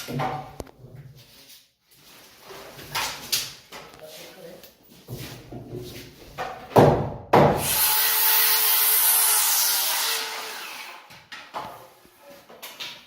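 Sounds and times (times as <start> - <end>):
power tool working wood: 7.6 - 11.1.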